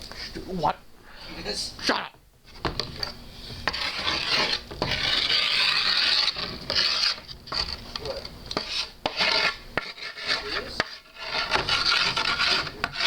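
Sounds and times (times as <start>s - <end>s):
grip tape rasping scrapes: 3.5s - 7.8s, 8.5s - 13.0s.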